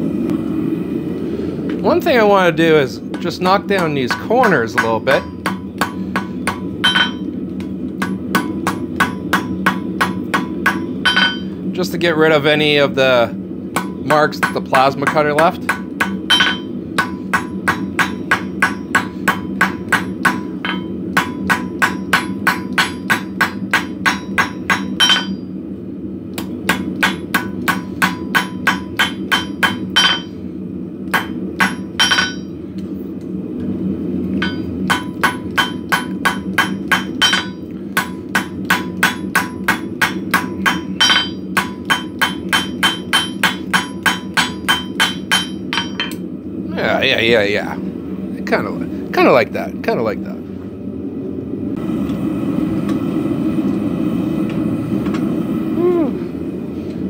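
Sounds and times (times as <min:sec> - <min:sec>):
steady low hum: 0:00.0 - 0:57.0
hammer striking steel: 0:03.1 - 0:11.5, 0:13.7 - 0:25.5, 0:26.4 - 0:30.4, 0:31.1 - 0:32.6, 0:34.3 - 0:46.2.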